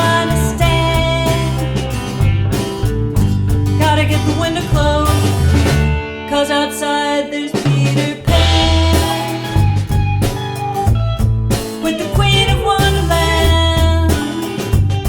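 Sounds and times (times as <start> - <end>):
bass line: 0.0 - 6.5, 7.6 - 15.0
guitar: 0.0 - 15.0.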